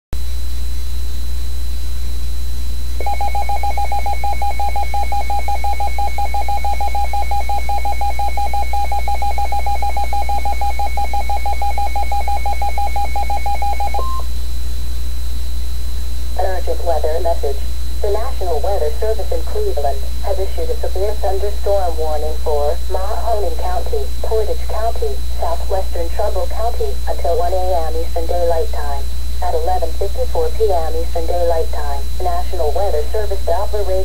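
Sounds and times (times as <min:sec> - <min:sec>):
steady higher tone: 0:00.2 - 0:16.8
electrical hum: 0:00.2 - 0:34.0
rapid electronic beeping: 0:02.7 - 0:14.6.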